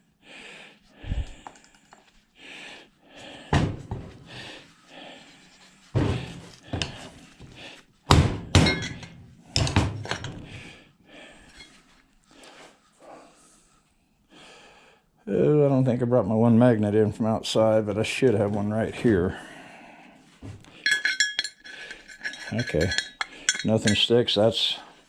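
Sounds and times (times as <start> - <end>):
handling and scraping noise: 3.8 - 7.9, 11.4 - 12.8, 20.3 - 24.7.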